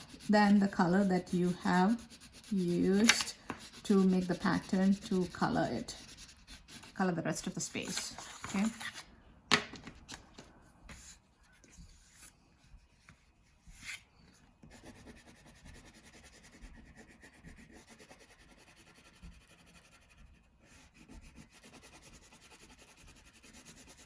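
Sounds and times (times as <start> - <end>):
crayon scratching on paper: 0.0 - 9.0, 14.6 - 24.0.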